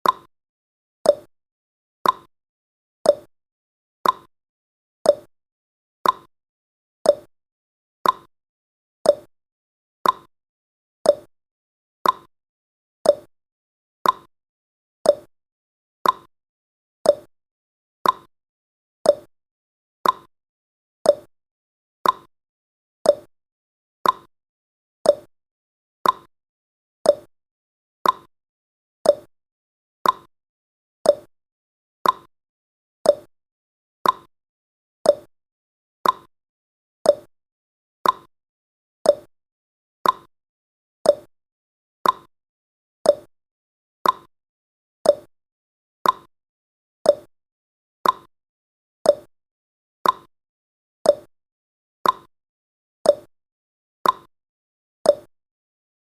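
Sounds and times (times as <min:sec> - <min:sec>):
timer ticking: 0:00.0 - 0:00.3, 0:01.1 - 0:01.3, 0:02.0 - 0:02.3, 0:03.1 - 0:03.3, 0:04.0 - 0:04.3, 0:05.1 - 0:05.3, 0:06.0 - 0:06.3, 0:07.1 - 0:07.3, 0:08.0 - 0:08.3, 0:09.1 - 0:09.3, 0:10.0 - 0:10.3, 0:11.1 - 0:11.3, 0:12.0 - 0:12.3, 0:13.1 - 0:13.3, 0:14.0 - 0:14.3, 0:15.1 - 0:15.3, 0:16.0 - 0:16.3, 0:17.1 - 0:17.3, 0:18.0 - 0:18.3, 0:19.1 - 0:19.3, 0:20.0 - 0:20.3, 0:21.1 - 0:21.3, 0:22.0 - 0:22.3, 0:23.1 - 0:23.3, 0:24.0 - 0:24.3, 0:25.1 - 0:25.3, 0:26.0 - 0:26.3, 0:27.1 - 0:27.3, 0:28.0 - 0:28.3, 0:29.0 - 0:29.3, 0:30.0 - 0:30.3, 0:31.0 - 0:31.3, 0:32.0 - 0:32.3, 0:33.0 - 0:33.3, 0:34.0 - 0:34.3, 0:35.1 - 0:35.3, 0:36.0 - 0:36.3, 0:37.1 - 0:37.3, 0:38.0 - 0:38.3, 0:39.1 - 0:39.3, 0:40.0 - 0:40.3, 0:41.1 - 0:41.3, 0:42.0 - 0:42.3, 0:43.1 - 0:43.3, 0:44.0 - 0:44.3, 0:45.1 - 0:45.3, 0:46.0 - 0:46.3, 0:47.1 - 0:47.3, 0:48.0 - 0:48.3, 0:49.1 - 0:49.3, 0:50.0 - 0:50.3, 0:51.1 - 0:51.3, 0:52.0 - 0:52.3, 0:53.1 - 0:53.3, 0:54.0 - 0:54.3, 0:55.1 - 0:55.3.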